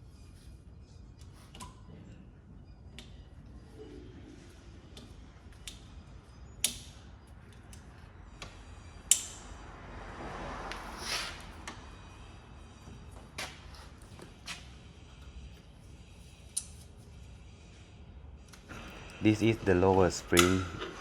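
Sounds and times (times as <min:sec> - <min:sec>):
sharp metallic clicks and taps: 0:08.4 - 0:09.4.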